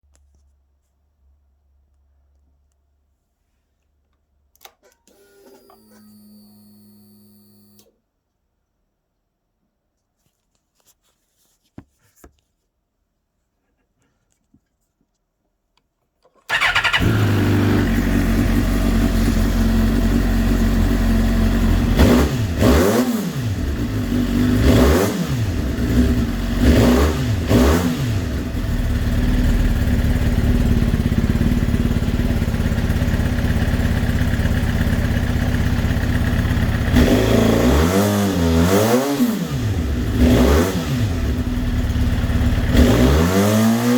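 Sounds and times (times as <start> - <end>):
motorcycle engine idling: 16.5 - 22.6, 28.6 - 37.2, 41.2 - 42.8
engine throttle blips: 16.5 - 22.7.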